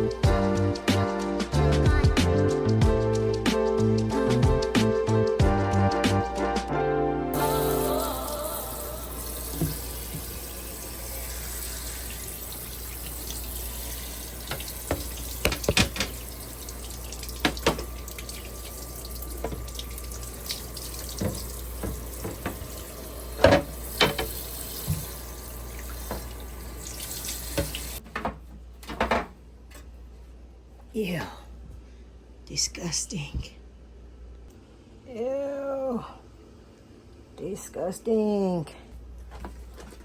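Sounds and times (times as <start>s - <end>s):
tap running into sink: 9.5s - 10.6s, 12.9s - 29.3s
shelves knocking against sink: 14.5s - 16.2s, 17.4s - 17.9s, 19.4s - 19.7s, 21.1s - 22.8s, 23.4s - 25.1s.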